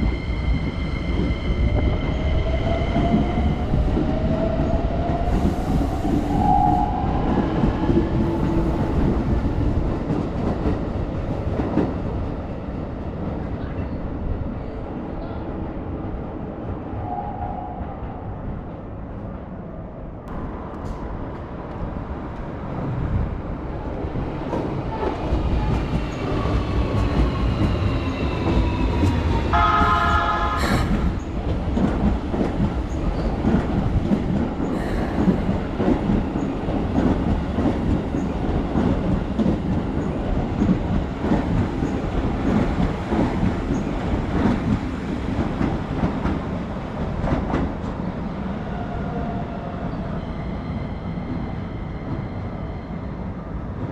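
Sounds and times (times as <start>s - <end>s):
train horn blast: 29.5s - 30.8s.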